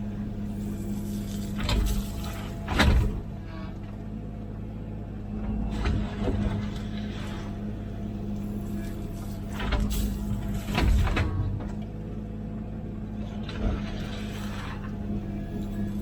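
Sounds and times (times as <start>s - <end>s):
excavator diesel engine running: 0.0s - 16.0s
excavator bucket clunks: 1.5s - 3.3s, 9.5s - 11.9s.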